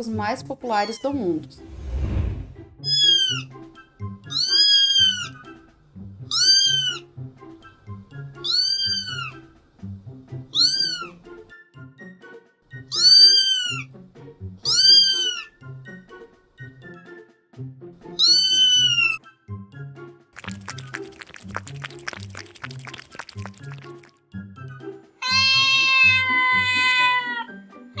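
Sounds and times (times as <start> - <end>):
background music: 0.0 - 28.0
cat meowing: 2.8 - 3.5, 4.3 - 5.3, 6.3 - 7.0, 8.4 - 9.4, 10.6 - 11.1, 12.9 - 13.9, 14.7 - 15.5, 18.2 - 19.2, 25.2 - 27.5.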